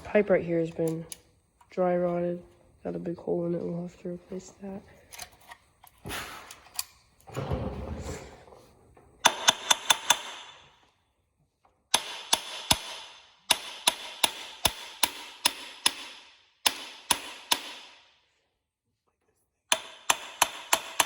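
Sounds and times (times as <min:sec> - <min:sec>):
hammer tapping on metal bolt: 0:11.9 - 0:17.8, 0:19.7 - 0:21.0.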